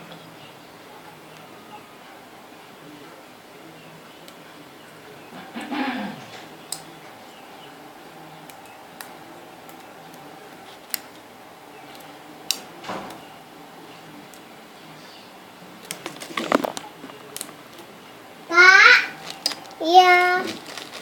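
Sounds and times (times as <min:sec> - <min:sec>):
faint hum: 0:00.0 - 0:21.0
rustling: 0:15.8 - 0:21.0.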